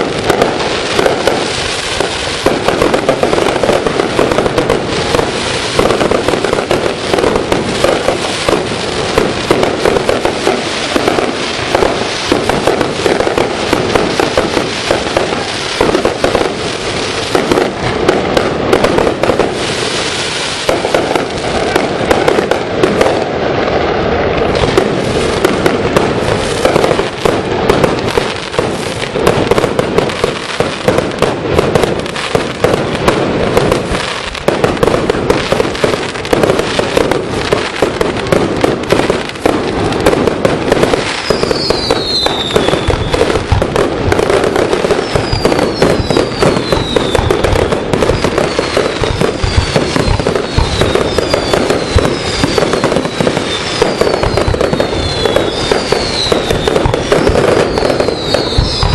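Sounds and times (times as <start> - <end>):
fireworks bangs and crackle: 0.0 - 58.9
falling firework whistles: 38.9 - 58.9.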